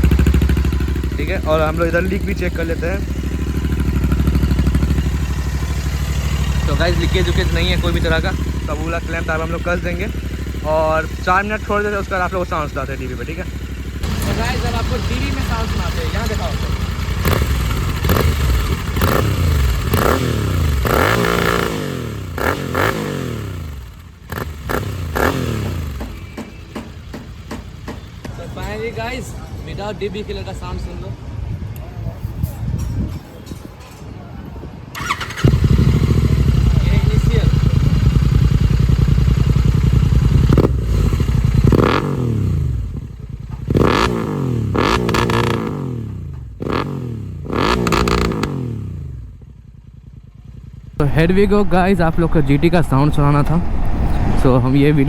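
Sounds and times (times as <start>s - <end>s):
motorcycle engine revving: 0.0s - 26.4s, 34.9s - 51.7s.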